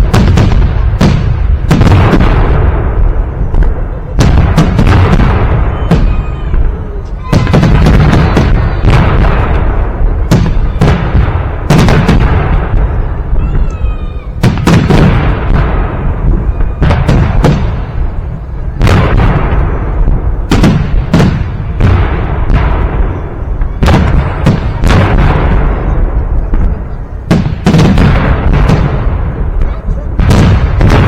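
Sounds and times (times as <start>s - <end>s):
fireworks booming with echo: 0.0s - 31.0s.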